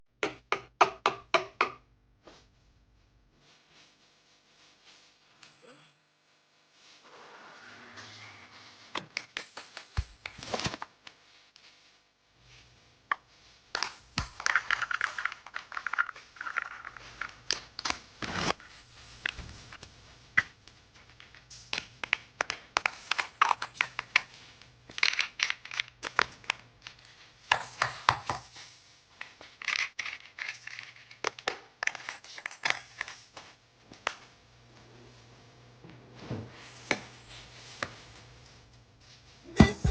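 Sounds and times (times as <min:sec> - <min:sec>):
plastic packaging crinkling: 0:13.8 - 0:18.5
faint low hum: 0:32.4 - 0:39.9.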